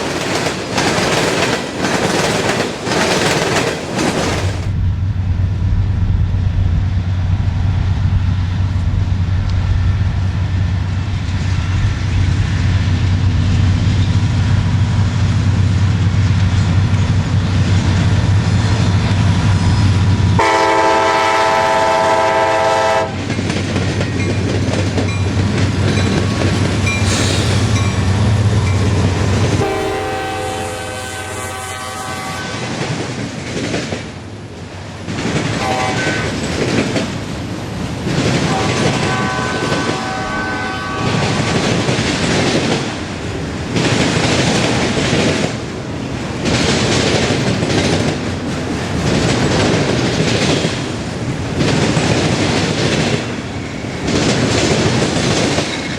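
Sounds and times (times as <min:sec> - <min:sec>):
freight train engine rumble: 0:00.0 - 0:55.9
locomotive air horn blast: 0:20.4 - 0:23.2, 0:27.1 - 0:32.8, 0:35.6 - 0:36.3, 0:38.5 - 0:41.4.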